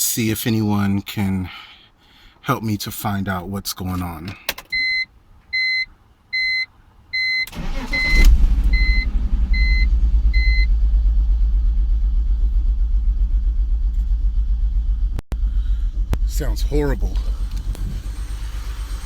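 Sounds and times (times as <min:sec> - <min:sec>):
car engine cranking and idling: 0:03.9 - 0:19.0
dashboard warning chime beeping: 0:04.7 - 0:10.7.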